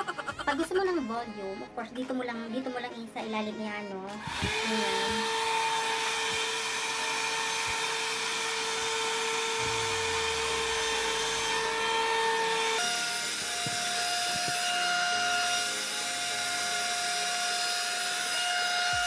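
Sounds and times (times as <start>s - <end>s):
hair dryer motor whine: 4.1s - 19.0s.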